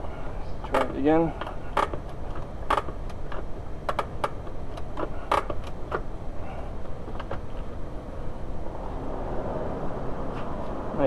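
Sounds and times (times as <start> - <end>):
handbrake ratchet clicking: 0.7 - 6.1.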